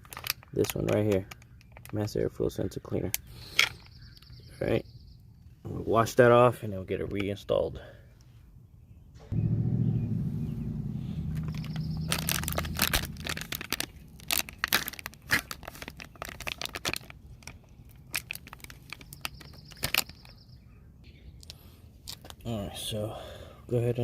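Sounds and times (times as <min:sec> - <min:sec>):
steady low hum: 0:09.1 - 0:14.2
crackling and sharp clicks: 0:11.3 - 0:20.3.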